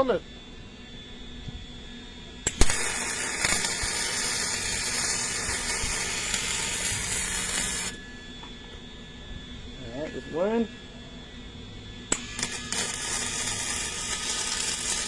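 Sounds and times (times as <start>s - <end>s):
welding arc crackling sizzle: 2.4s - 8.7s, 12.1s - 15.0s
welding arc crack: 2.5s - 8.0s, 12.1s - 15.0s.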